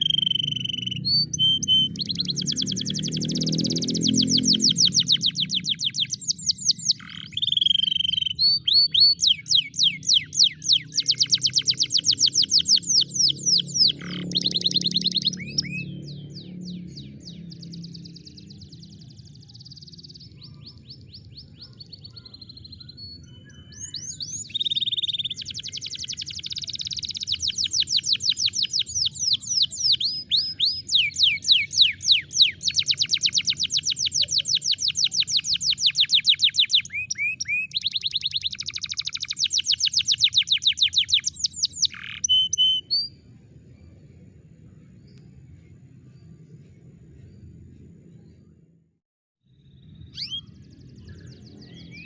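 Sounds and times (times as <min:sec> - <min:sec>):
canary singing fast trills: 0:00.0 - 0:43.3, 0:49.6 - 0:52.0.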